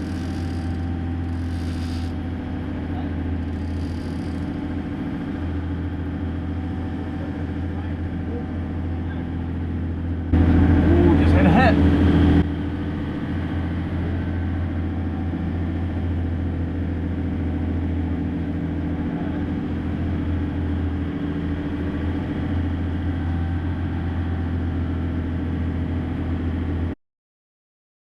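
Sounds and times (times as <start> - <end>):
boat engine droning: 0.0 - 27.0.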